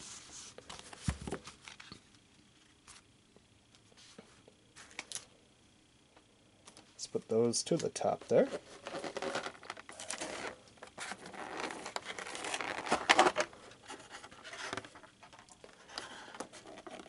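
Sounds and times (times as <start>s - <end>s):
packaging rustling and crinkling: 8.3s - 17.0s.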